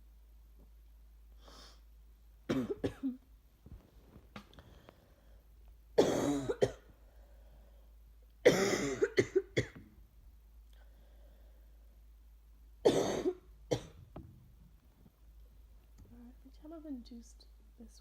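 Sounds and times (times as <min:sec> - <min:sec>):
woman coughing: 0:02.5 - 0:03.2, 0:06.0 - 0:06.8, 0:08.5 - 0:09.8, 0:12.8 - 0:14.0.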